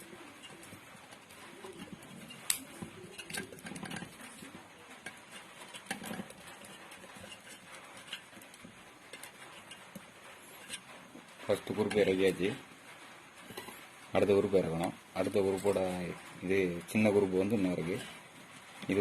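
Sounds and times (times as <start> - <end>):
wire clicking and rustling: 0.0 - 19.0.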